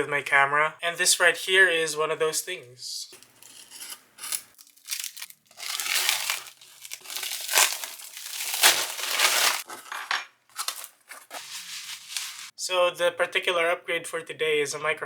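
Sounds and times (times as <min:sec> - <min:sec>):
packaging crinkling and tearing: 0:04.2 - 0:09.9, 0:10.5 - 0:12.5.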